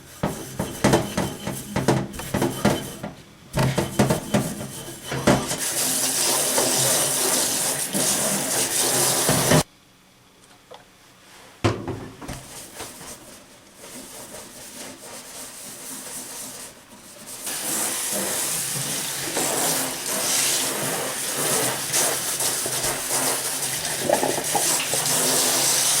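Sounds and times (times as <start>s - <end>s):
knocking and scraping: 0.0s - 5.8s, 9.0s - 9.7s
water spraying onto cookware: 0.0s - 9.6s, 13.8s - 26.0s.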